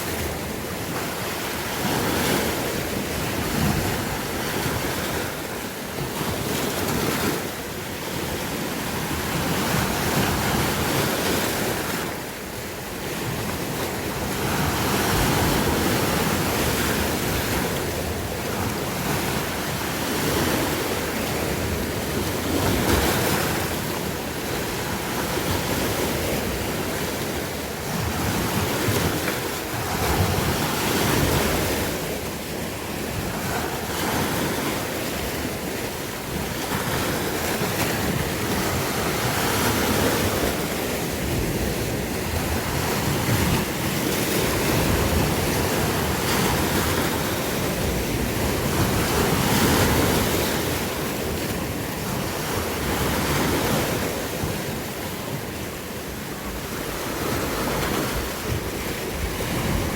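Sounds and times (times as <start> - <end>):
sea waves breaking: 0.0 - 59.9
wind buffeting microphone: 56.4 - 59.9.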